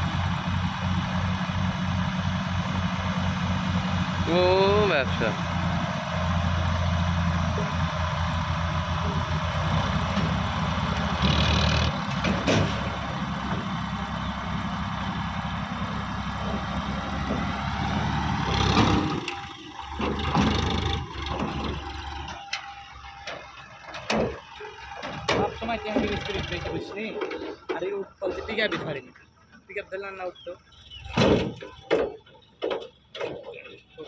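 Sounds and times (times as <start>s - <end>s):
heavy machinery diesel engine running: 0.0s - 34.0s.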